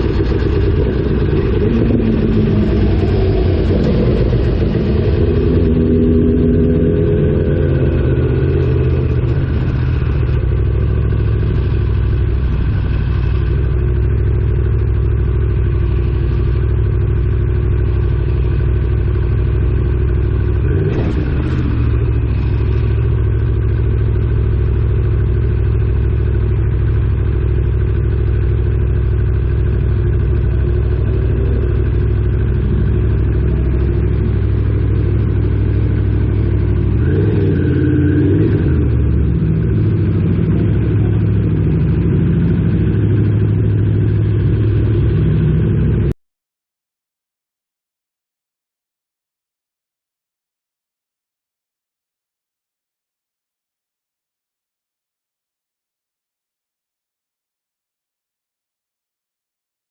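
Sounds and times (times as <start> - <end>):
motorcycle engine running: 0.0 - 46.2.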